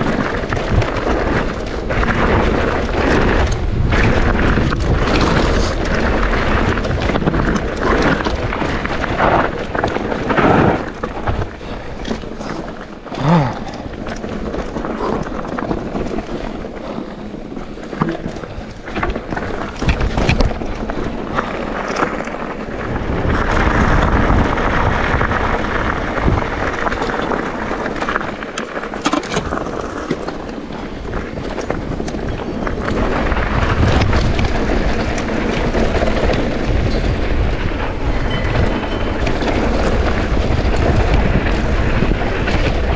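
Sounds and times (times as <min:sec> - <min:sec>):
bike knocking and rattling: 0:00.0 - 0:42.9
bike tyres on dirt: 0:00.0 - 0:42.9.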